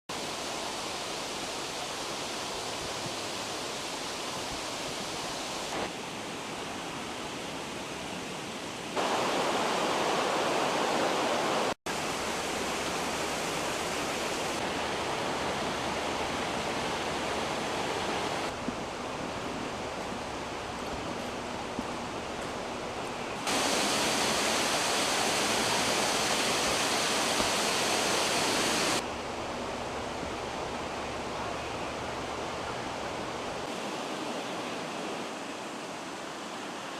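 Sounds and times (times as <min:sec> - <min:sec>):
rushing floodwater: 0:00.1 - 0:36.9.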